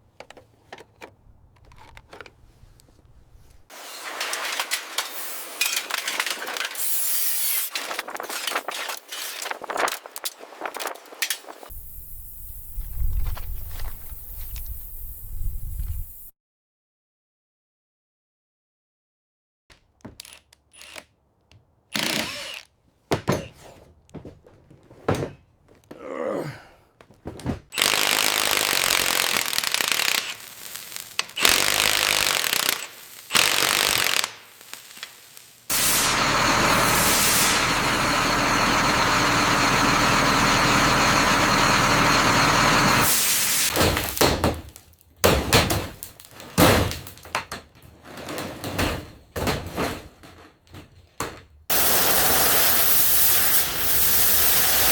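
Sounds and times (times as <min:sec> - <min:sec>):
power tool running: 0:22.0 - 0:22.6, 0:27.7 - 0:44.2, 0:51.7 - 0:54.9
workshop knocks: 0:23.1 - 0:25.8, 0:43.7 - 0:47.8.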